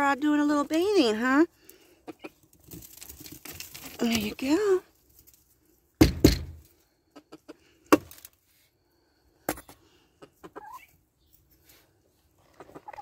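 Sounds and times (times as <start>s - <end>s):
sharp knocks and thumps: 6.0s - 6.7s.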